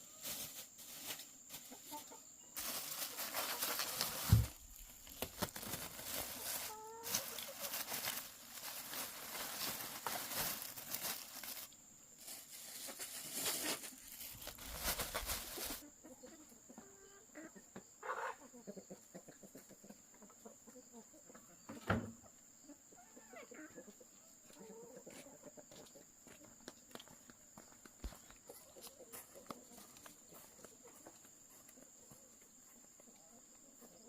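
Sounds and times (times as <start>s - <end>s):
chickens clucking: 1.4s - 4.5s, 5.7s - 11.7s, 15.3s - 21.8s, 22.6s - 26.5s, 28.2s - 34.0s.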